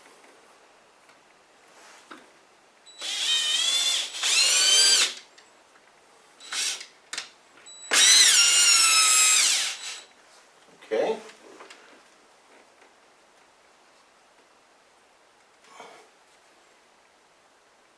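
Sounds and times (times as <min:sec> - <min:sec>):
electric drill whining: 0:02.9 - 0:05.2, 0:06.4 - 0:06.9, 0:07.9 - 0:10.1.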